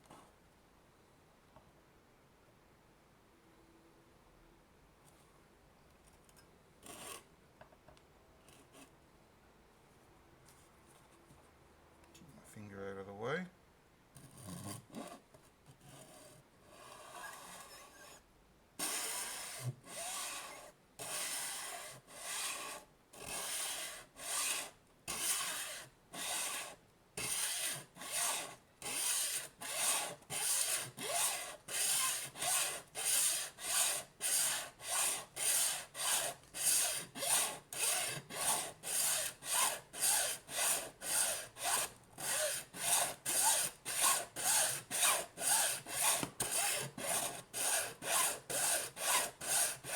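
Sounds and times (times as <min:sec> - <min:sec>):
hand saw rasping through plastic: 0:18.8 - 0:49.9.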